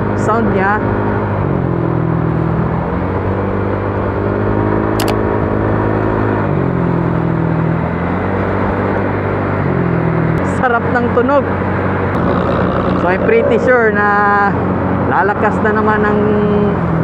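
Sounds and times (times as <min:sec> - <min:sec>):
scooter engine revving and idling: 0:12.2 - 0:14.8.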